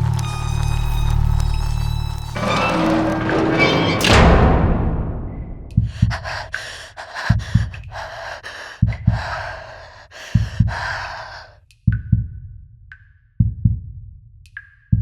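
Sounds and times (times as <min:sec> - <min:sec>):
slow heartbeat thumps: 0:04.5 - 0:08.1, 0:08.8 - 0:09.6
heavy gasping breaths: 0:05.8 - 0:11.6.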